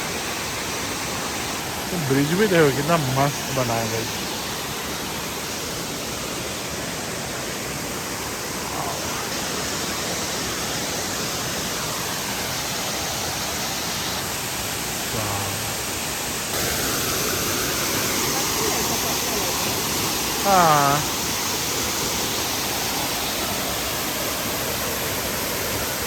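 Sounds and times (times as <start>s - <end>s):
fast-flowing stream: 0.0s - 26.0s
waterfall rushing: 0.0s - 26.0s.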